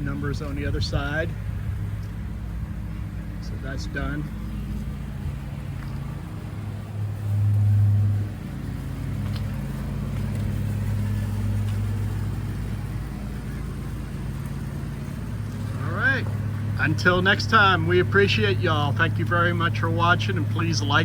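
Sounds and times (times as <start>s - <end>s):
outboard motor idling: 0.0s - 21.0s.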